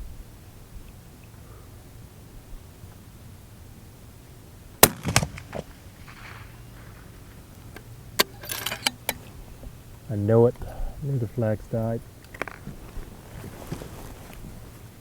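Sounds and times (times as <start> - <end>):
rifle shot: 4.8 - 6.6
metallic clicks: 7.8 - 9.3.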